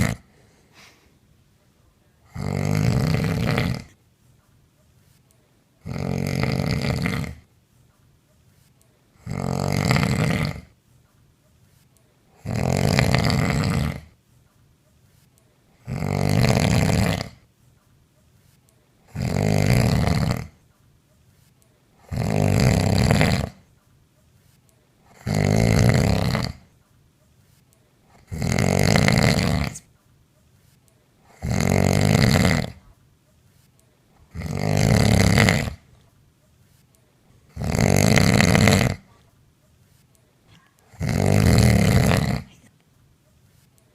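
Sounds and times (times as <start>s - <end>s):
woman snoring loudly: 0.0s - 0.3s, 2.3s - 4.0s, 5.8s - 7.4s, 9.2s - 10.7s, 12.4s - 14.2s, 15.8s - 17.4s, 19.0s - 20.6s, 22.0s - 23.6s, 25.1s - 26.7s, 28.1s - 29.8s, 31.3s - 32.8s, 34.3s - 35.8s, 37.5s - 39.1s, 40.9s - 42.6s.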